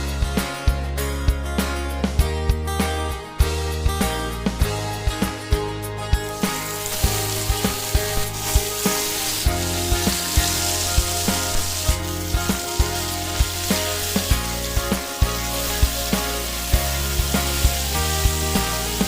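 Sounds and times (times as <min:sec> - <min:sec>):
fish sizzling in hot oil: 0:06.3 - 0:19.0.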